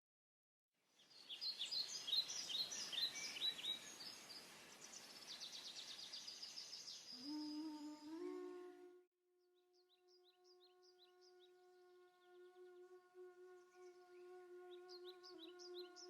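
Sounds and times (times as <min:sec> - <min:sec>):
soft steady hiss: 0:00.9 - 0:09.0
birds chirping and trilling: 0:01.1 - 0:07.4, 0:09.7 - 0:16.0.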